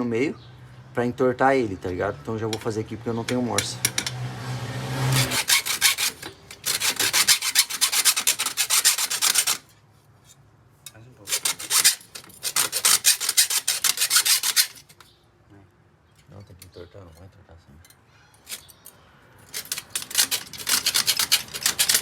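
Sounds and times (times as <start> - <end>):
hand saw cutting metal tube: 2.6 - 9.7, 11.2 - 15.0, 19.5 - 22.0.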